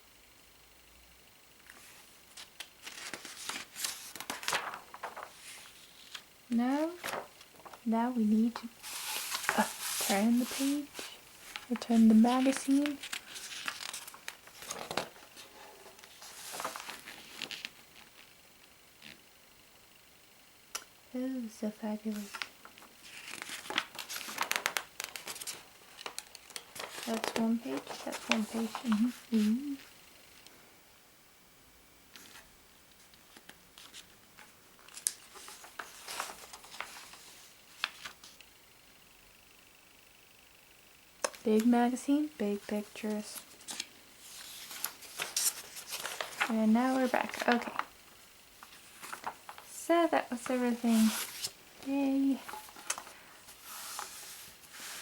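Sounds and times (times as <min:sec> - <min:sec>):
paper rustling and crinkling: 0:01.7 - 0:18.3, 0:22.1 - 0:29.9, 0:32.2 - 0:38.4, 0:42.6 - 0:55.0.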